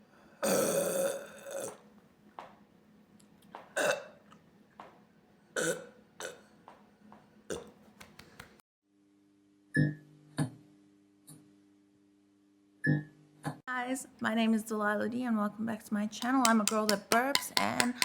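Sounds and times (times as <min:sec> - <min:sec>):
woman burping: 0:00.4 - 0:01.8, 0:03.8 - 0:04.2, 0:05.6 - 0:06.4.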